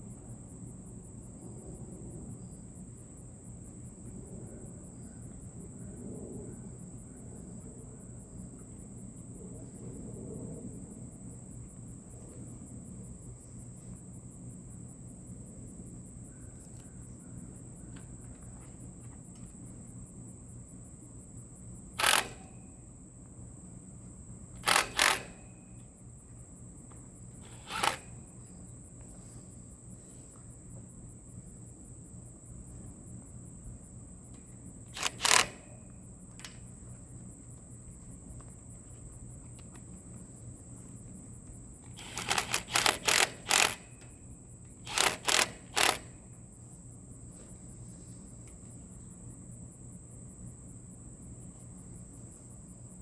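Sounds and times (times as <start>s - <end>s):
crickets trilling: 0.0s - 53.0s
sharp clicks and knocks: 22.0s - 22.6s, 24.6s - 25.5s, 27.5s - 28.2s, 34.4s - 36.7s, 41.9s - 44.2s, 44.8s - 46.2s.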